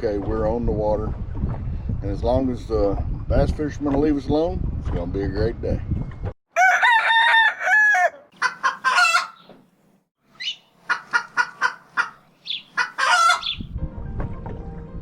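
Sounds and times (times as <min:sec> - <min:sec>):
rooster crowing: 0:06.5 - 0:09.4, 0:12.9 - 0:13.5
chicken clucking: 0:10.9 - 0:13.6.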